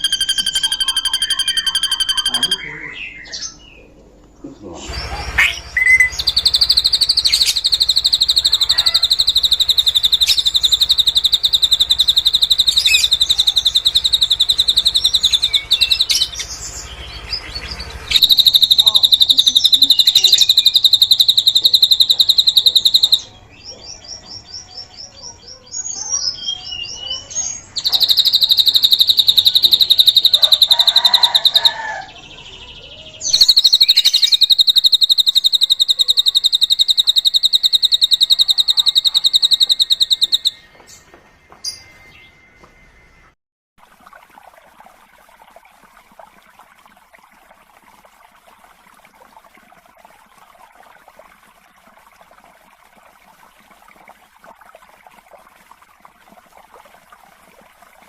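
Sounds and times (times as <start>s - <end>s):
bird singing rapid trills: 0.0s - 3.9s, 5.4s - 41.1s.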